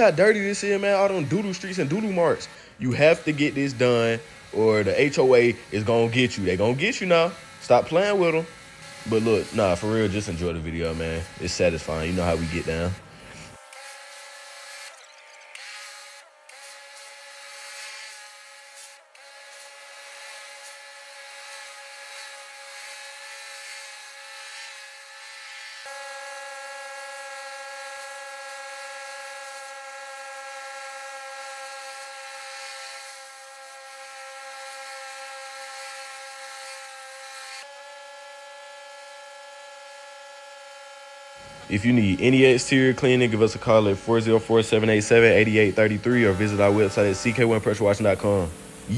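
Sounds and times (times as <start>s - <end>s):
water spray hissing: 0.0s - 8.4s, 44.6s - 48.9s
pressure washer whine: 0.0s - 13.6s, 41.4s - 48.9s.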